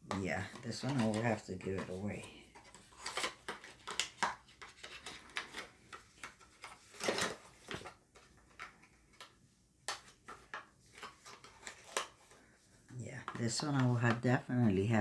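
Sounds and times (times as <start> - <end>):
packaging clicks and taps: 0.0 - 12.5.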